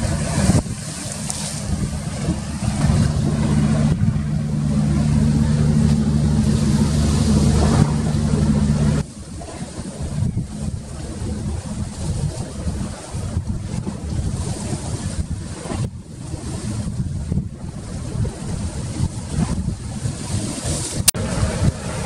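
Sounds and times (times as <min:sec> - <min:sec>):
engine humming: 0:00.0 - 0:14.2
rushing wind: 0:00.0 - 0:22.0.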